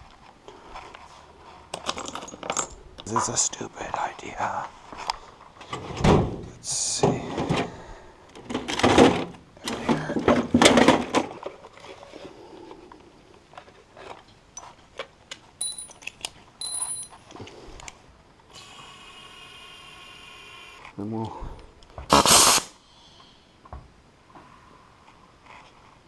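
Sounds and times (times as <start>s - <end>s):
metal parts clicking and clinking: 1.7s - 2.8s, 15.6s - 17.2s.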